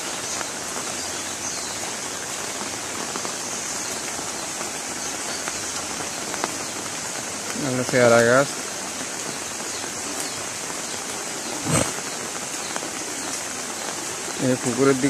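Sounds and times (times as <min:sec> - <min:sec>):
rain falling steadily: 0:00.0 - 0:15.0.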